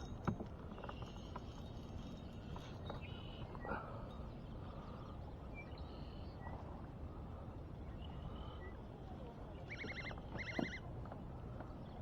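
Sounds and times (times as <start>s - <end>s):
faint bird chirps: 9.6s - 10.8s.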